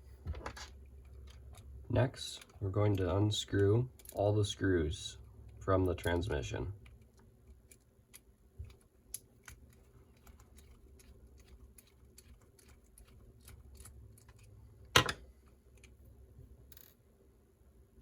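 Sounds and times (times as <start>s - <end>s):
screwdriver clicking on tiny screws: 6.8s - 14.6s.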